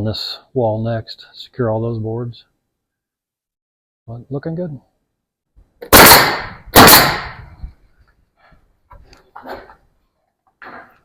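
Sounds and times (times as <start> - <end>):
nails hammered into wood: 5.8 - 7.4.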